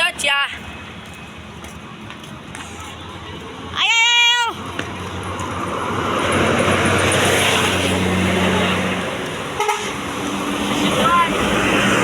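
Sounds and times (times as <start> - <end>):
bus driving past: 4.5 - 12.0.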